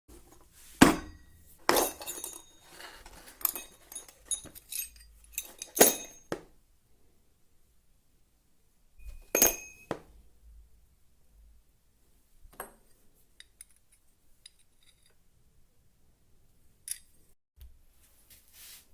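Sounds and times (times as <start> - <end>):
saw blades clinking and ringing: 9.4 - 10.0.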